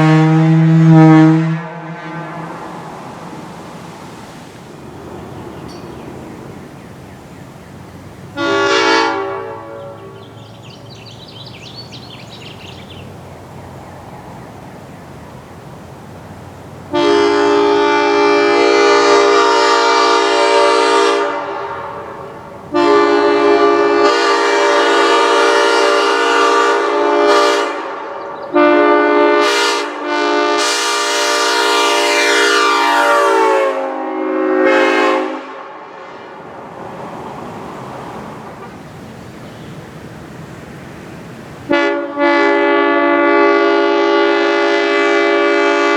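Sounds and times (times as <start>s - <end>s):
railroad air horns: 0.0s - 3.8s, 8.3s - 11.1s, 16.9s - 39.1s, 41.7s - 45.9s.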